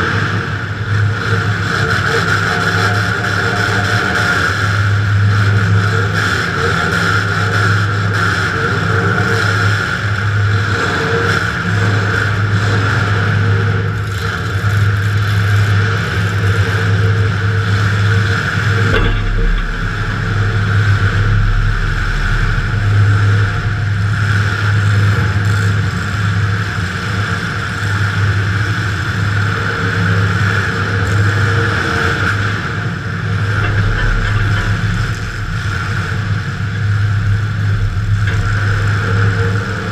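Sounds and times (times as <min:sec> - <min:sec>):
car engine running loud: 0:00.0 - 0:39.9
deep rumble: 0:16.4 - 0:27.2, 0:32.7 - 0:39.9.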